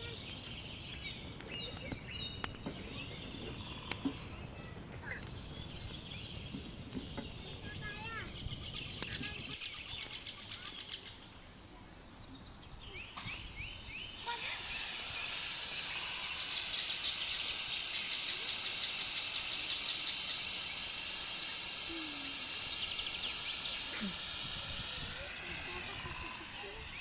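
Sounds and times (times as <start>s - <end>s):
birds chirping faintly: 0.0s - 27.0s
food sizzling in hot oil: 13.2s - 27.0s.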